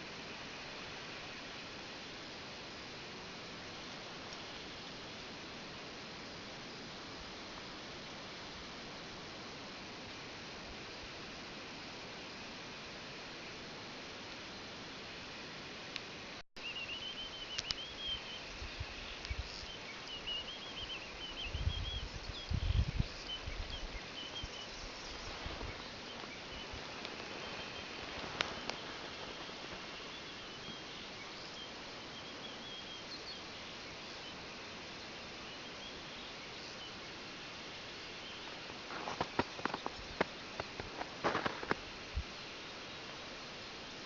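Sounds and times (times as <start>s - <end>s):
faint hiss: 0.0s - 44.0s
small bird singing: 16.6s - 34.6s
songbirds chirping: 16.6s - 44.0s.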